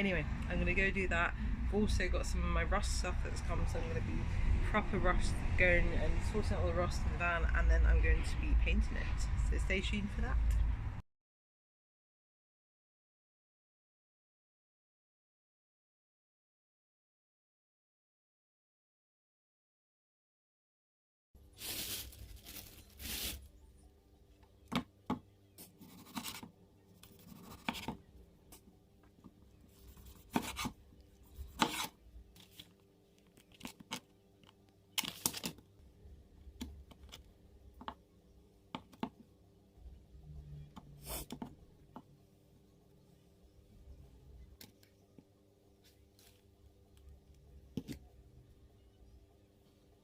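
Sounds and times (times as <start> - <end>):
scraping and tearing strokes: 21.6 - 23.4.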